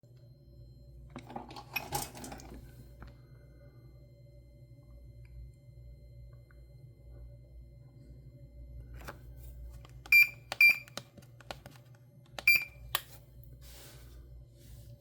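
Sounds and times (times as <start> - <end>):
keypad button clicks: 12.4 - 12.7.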